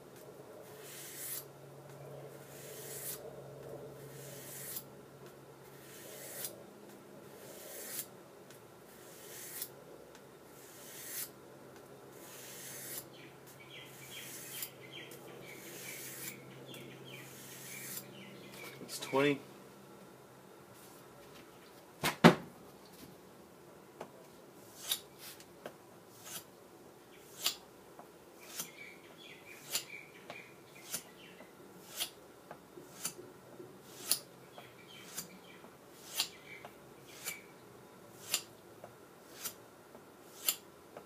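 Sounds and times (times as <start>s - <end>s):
knife blade rasping on sandpaper: 0.7s - 1.5s, 2.4s - 3.2s, 4.0s - 4.9s, 5.7s - 6.5s, 7.3s - 8.1s, 8.9s - 9.7s, 10.6s - 11.3s, 12.2s - 13.1s, 13.8s - 14.7s, 15.5s - 16.4s, 17.2s - 18.1s, 24.6s - 25.4s, 26.1s - 26.5s, 27.2s - 27.6s, 28.4s - 28.8s, 30.8s - 31.1s, 31.8s - 32.2s, 32.9s - 33.2s, 33.8s - 34.2s, 36.0s - 36.4s, 37.1s - 37.4s, 38.2s - 38.5s, 39.3s - 39.6s, 40.2s - 40.6s.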